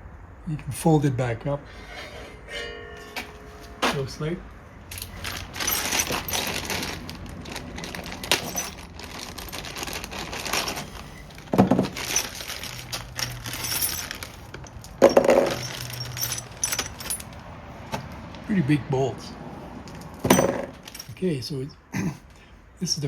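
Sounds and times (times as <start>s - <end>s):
heavy metal clunks: 2.2s - 4.3s
metal parts clinking: 4.9s - 17.4s, 19.9s - 21.2s.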